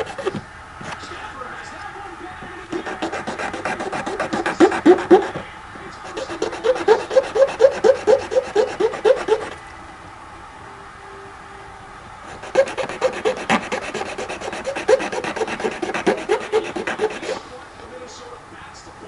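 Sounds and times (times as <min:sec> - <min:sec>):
scraping on plastic with squeaks: 0:00.0 - 0:01.1, 0:02.4 - 0:09.6, 0:12.3 - 0:17.5.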